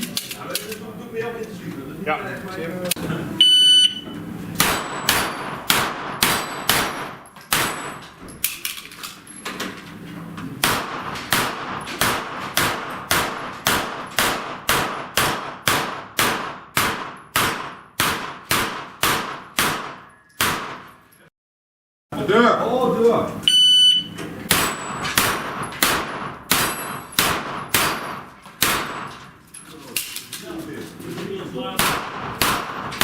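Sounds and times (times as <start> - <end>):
rapid gunshots: 4.6 - 7.9, 10.6 - 20.9, 24.5 - 29.1, 31.7 - 33.0
steel targets ringing clang: 4.6 - 8.7, 24.0 - 29.3.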